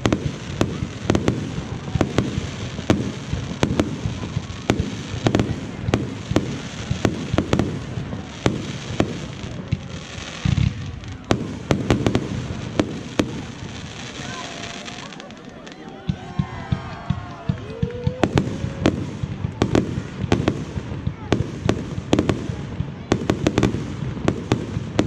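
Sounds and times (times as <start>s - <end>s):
fireworks bursting: 0.0s - 25.0s.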